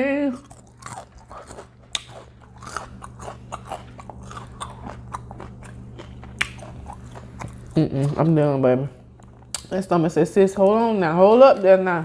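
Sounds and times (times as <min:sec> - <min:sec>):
steady low hum: 0:00.0 - 0:12.0
crunchy chewing: 0:00.3 - 0:11.9.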